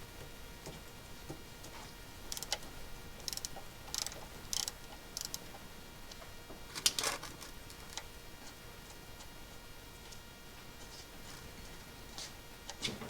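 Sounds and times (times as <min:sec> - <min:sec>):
socket ratchet clicking: 0:02.3 - 0:02.6, 0:03.3 - 0:05.4.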